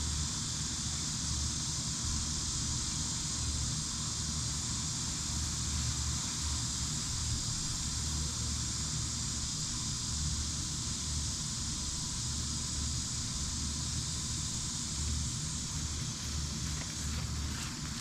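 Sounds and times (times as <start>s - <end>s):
high-pitched hiss: 2.3s - 18.0s.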